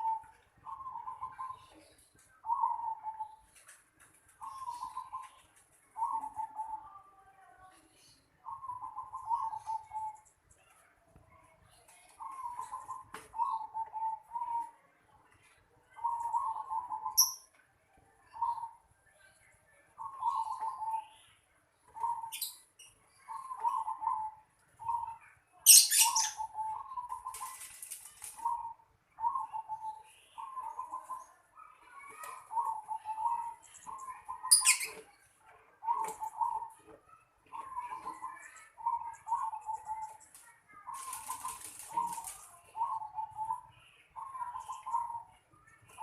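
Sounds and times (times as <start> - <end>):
dove cooing: 0.0 - 3.5, 4.4 - 7.0, 8.4 - 10.2, 12.2 - 14.8, 15.9 - 17.4, 20.0 - 21.2, 21.9 - 22.5, 23.2 - 31.2, 32.2 - 35.0, 35.8 - 36.9, 37.5 - 40.2, 40.8 - 45.3.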